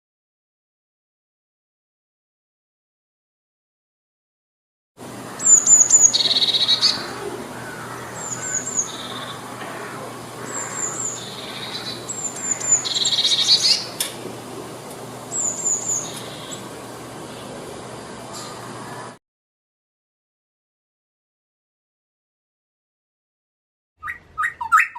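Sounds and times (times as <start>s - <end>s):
small songbird singing: 5.3s - 14.1s, 15.2s - 17.6s.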